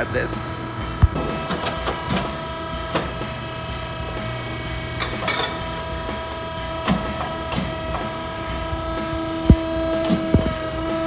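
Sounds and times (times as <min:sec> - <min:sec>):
pipe bender humming: 0:00.0 - 0:11.0
sharp clicks and clanks: 0:05.0 - 0:11.0.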